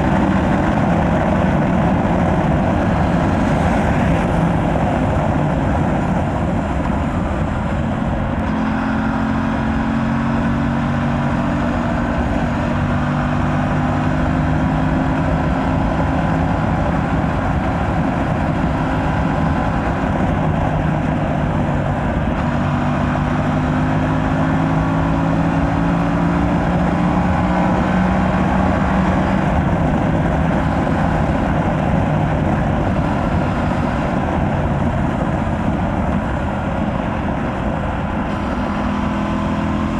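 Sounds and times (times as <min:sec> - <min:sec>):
motorcycle engine accelerating: 0:00.0 - 0:39.9
wind and road noise: 0:00.0 - 0:39.9.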